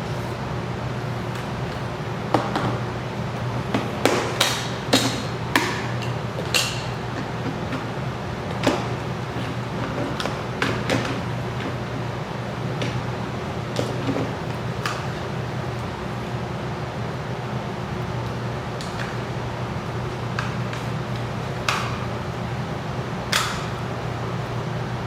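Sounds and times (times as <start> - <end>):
steady low hum: 0.0 - 25.0.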